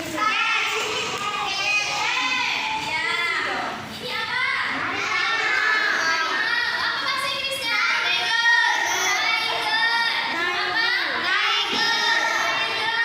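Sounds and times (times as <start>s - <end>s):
children singing: 4.9s - 6.5s, 11.4s - 13.0s.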